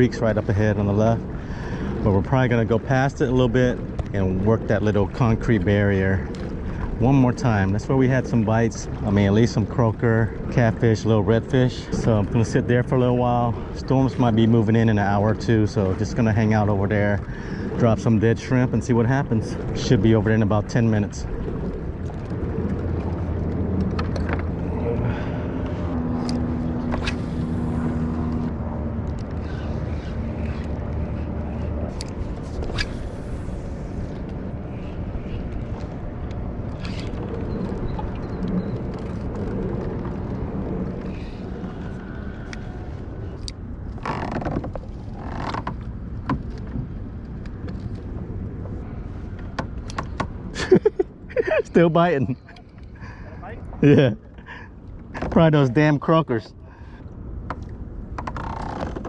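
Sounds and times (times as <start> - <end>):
water rushing: 0.0 - 54.6
low engine hum: 0.0 - 59.0
wind: 0.0 - 59.0
light knocks from hull: 49.4 - 50.5.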